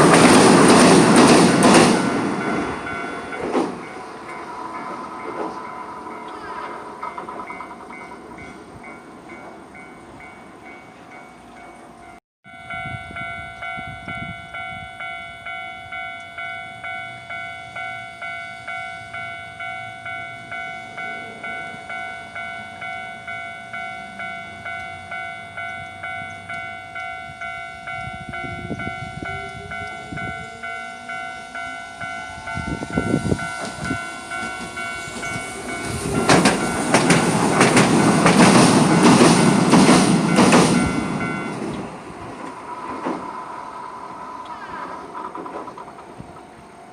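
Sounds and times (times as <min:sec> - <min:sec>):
level crossing warning bell: 0:00.0 - 0:42.4
tram motor whine: 0:00.0 - 0:46.9.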